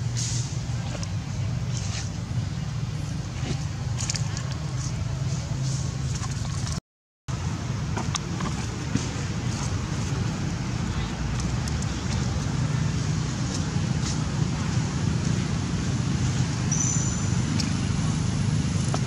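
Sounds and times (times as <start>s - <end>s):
road traffic rumble: 0.0s - 19.0s
high chirp: 16.7s - 17.6s.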